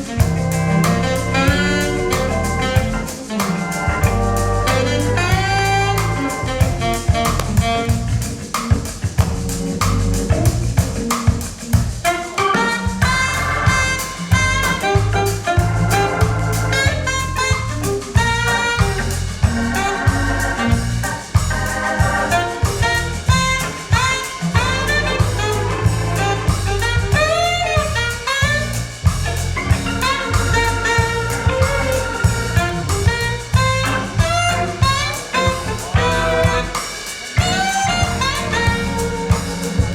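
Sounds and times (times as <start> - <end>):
jazz with drums and horns: 0.0 - 39.9.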